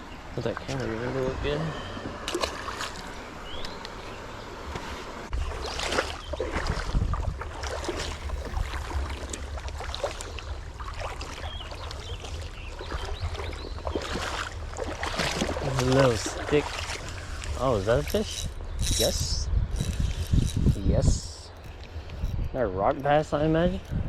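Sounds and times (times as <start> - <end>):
creek water rushing and splashing: 0.0 - 18.2
wind rumbling on microphone: 0.0 - 24.0.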